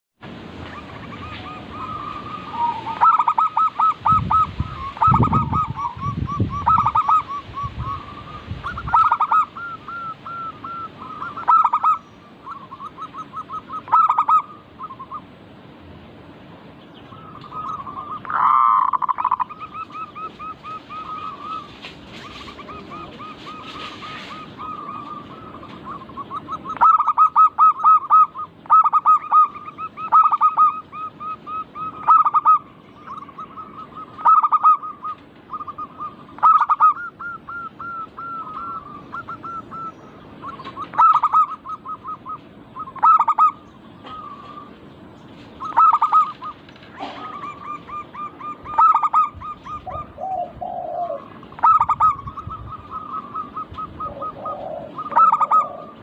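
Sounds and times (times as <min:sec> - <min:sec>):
doves cooing: 0:00.6 - 0:15.3, 0:17.0 - 0:56.0
lower short bird call: 0:45.6 - 0:50.4.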